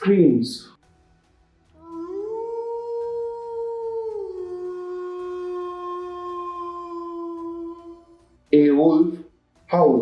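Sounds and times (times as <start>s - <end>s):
wolf howling: 1.8s - 8.2s.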